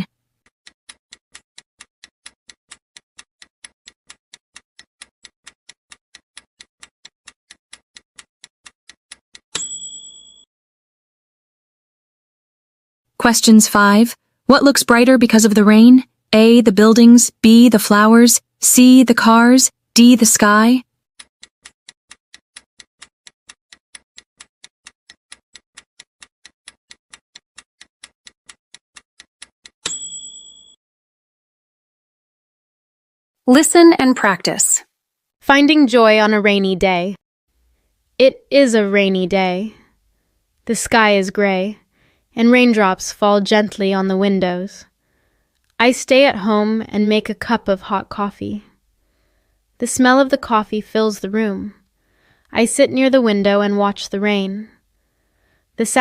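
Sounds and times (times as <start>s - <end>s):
clock-like ticking: 0.4s - 9.7s, 21.2s - 30.0s
high bell ding: 9.6s - 10.4s, 29.9s - 30.8s.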